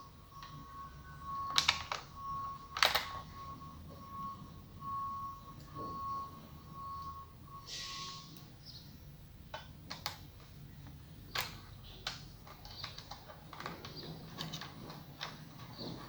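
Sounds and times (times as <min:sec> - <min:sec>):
small parts clicking and tapping: 0:01.3 - 0:03.3, 0:09.4 - 0:16.0.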